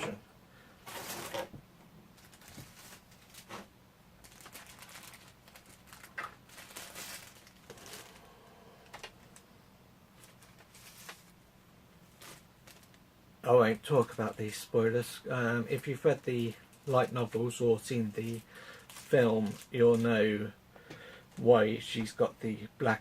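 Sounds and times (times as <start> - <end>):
plastic packaging crinkling: 0.8 - 8.3, 10.2 - 11.4, 12.0 - 13.0, 13.7 - 14.7, 15.7 - 20.3.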